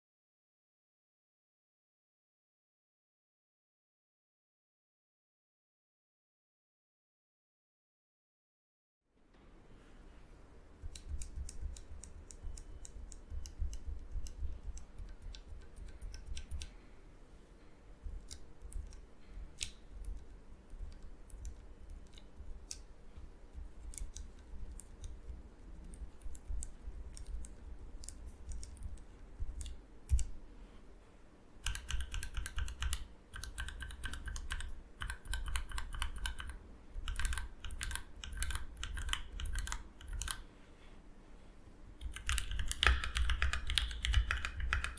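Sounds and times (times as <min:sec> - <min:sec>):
typing on mechanical keyboard: 0:10.8 - 0:16.8, 0:23.7 - 0:30.3, 0:31.6 - 0:40.4, 0:42.0 - 0:44.9.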